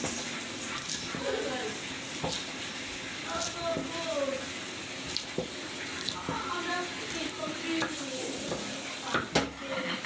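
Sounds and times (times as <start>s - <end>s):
water running from a tap: 0.0s - 10.0s.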